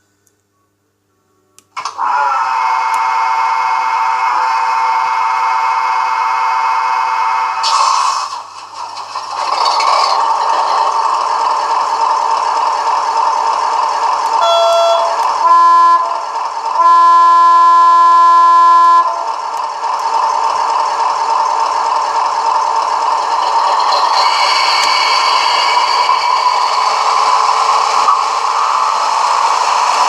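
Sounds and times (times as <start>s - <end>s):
diesel engine running: 2.9s - 30.0s
locomotive horn blasts: 14.4s - 16.2s, 16.8s - 19.4s.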